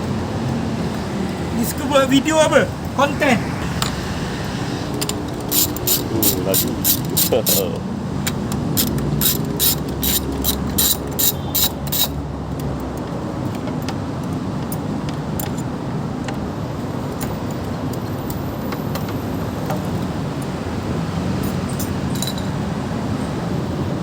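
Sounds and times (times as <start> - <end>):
ratchet wrench clicking: 5.0 - 12.7.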